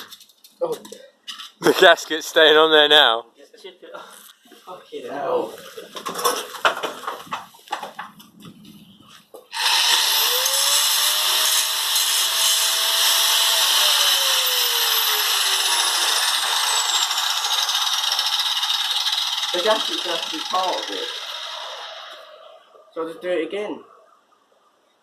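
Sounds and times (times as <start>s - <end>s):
angle grinder grinding metal: 9.5s - 22.6s.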